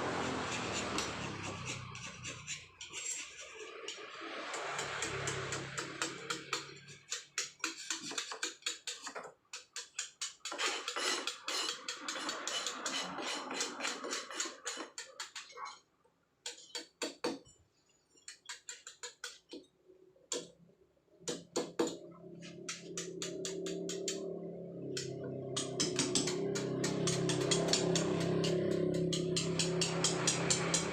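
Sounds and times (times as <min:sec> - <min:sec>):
hammer tapping chisel on stone: 0:25.0 - 0:30.9.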